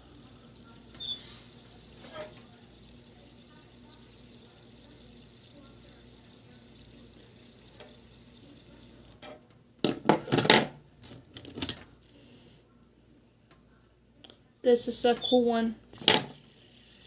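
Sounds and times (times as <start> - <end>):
fidget spinners clattering: 0.0 - 9.3, 15.0 - 17.0.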